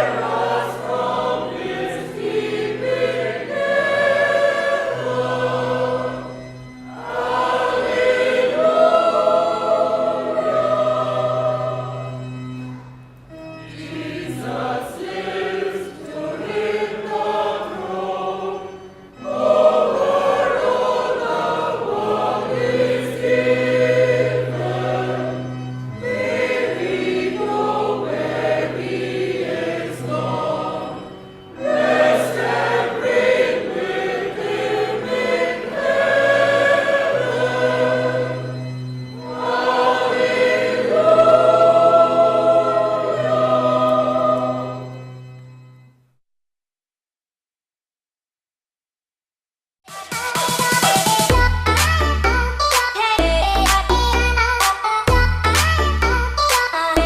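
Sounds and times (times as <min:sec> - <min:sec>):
choir singing a hymn: 0:00.0 - 0:45.2.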